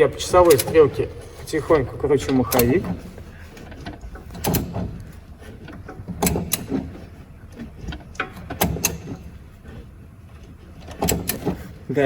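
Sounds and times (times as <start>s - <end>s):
sharp metallic clicks: 0.0s - 3.0s.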